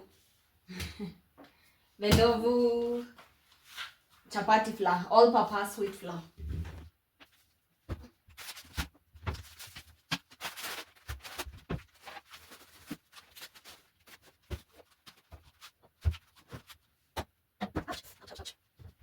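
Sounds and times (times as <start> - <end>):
items knocking and thumping down: 7.8 - 10.3, 14.4 - 19.0
shopping items rustling: 8.3 - 16.8.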